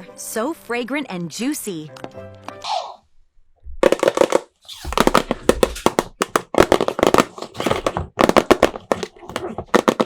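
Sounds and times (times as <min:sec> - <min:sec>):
plastic packaging crinkling: 0:03.8 - 0:10.0.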